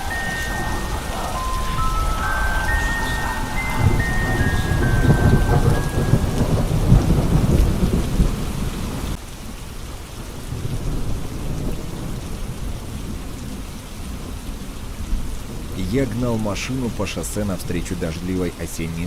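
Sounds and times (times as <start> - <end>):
high chime notes: 0.0 - 7.3
heavy rumble of thunder: 0.0 - 9.2, 10.3 - 17.7
steady rain: 0.0 - 19.0.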